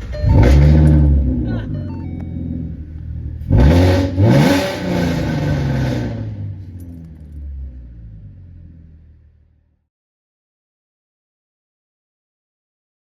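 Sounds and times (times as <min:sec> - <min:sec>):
car engine revving: 0:00.0 - 0:09.7.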